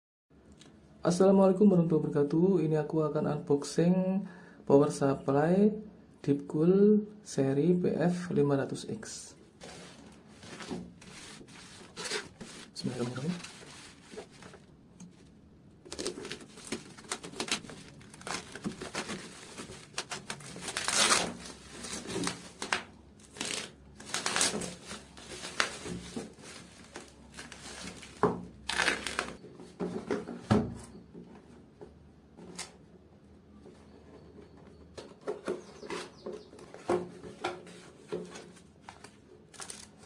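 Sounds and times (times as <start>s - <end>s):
plastic and cardboard crinkling: 9.6s - 30.8s, 35.0s - 40.0s.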